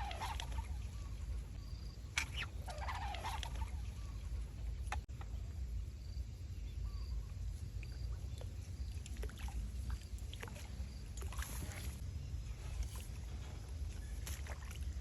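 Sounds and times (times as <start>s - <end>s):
low wind rumble: 0.0s - 15.0s
fishing line hissing through water: 10.4s - 14.9s.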